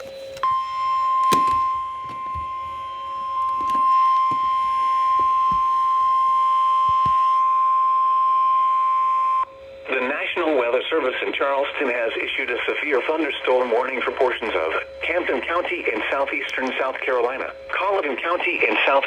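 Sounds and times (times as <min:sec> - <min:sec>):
high warning alarm beep: 0:00.3 - 0:09.8.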